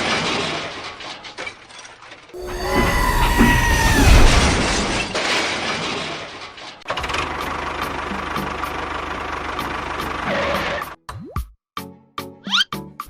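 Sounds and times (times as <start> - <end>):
mixed mechanical noise: 2.4 - 5.2.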